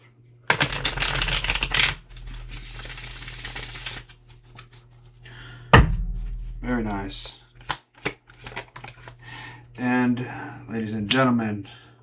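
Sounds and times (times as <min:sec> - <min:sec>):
cards shuffling: 0:00.5 - 0:04.0, 0:07.6 - 0:09.2
sharp knock: 0:05.8 - 0:07.1.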